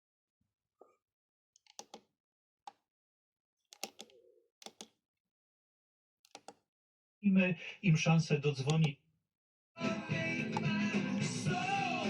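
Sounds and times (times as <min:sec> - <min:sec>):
car radio buttons clicking: 0:03.8 - 0:04.1.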